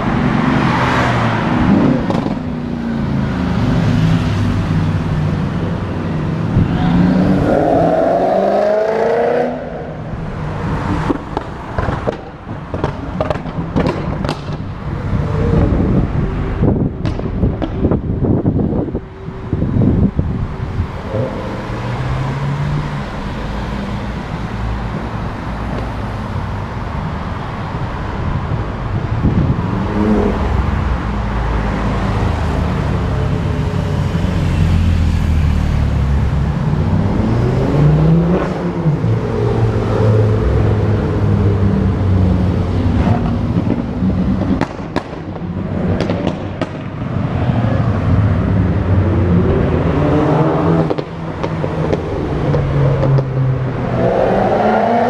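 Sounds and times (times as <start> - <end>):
sports cars accelerating past: 29.3 - 55.0.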